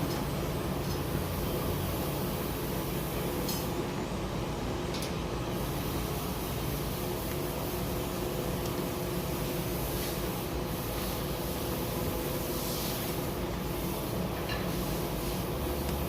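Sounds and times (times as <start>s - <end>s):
mechanical hum: 0.0s - 16.0s.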